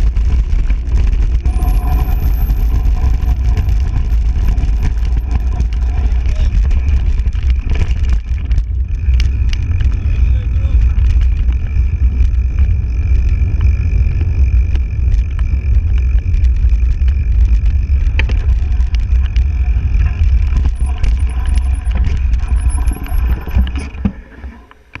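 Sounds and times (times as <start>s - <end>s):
bike rattles and clicks: 0.0s - 25.0s
bike tyre noise: 0.0s - 25.0s
wind rushing over microphone: 0.0s - 25.0s
thin high whine: 1.3s - 8.2s, 17.6s - 25.0s.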